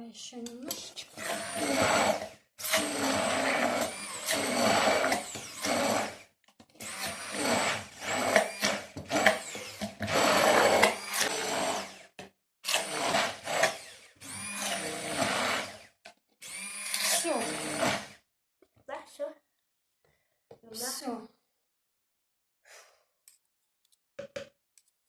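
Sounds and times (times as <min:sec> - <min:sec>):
electric blender motor whining: 0:01.1 - 0:18.2.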